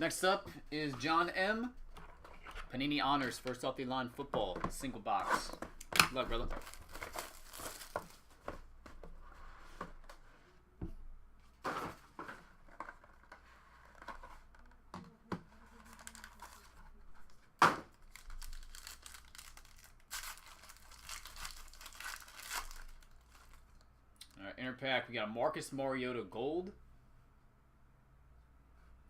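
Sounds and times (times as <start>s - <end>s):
wrapping tearing and crinkling: 5.8s - 8.4s, 15.6s - 23.9s.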